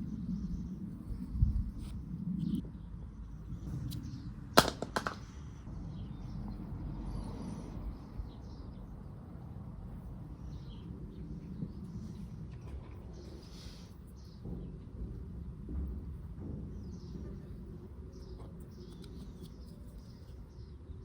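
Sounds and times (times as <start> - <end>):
sharp metal clicks: 4.6 - 5.3.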